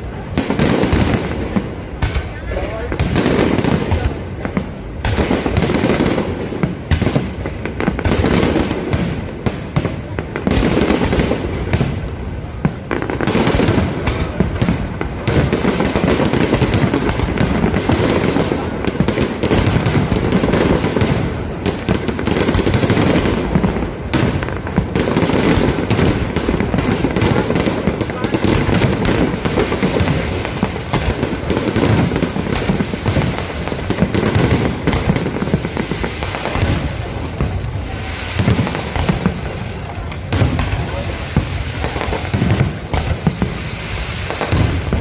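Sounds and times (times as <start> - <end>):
fireworks bangs and crackling: 0.0 - 45.0.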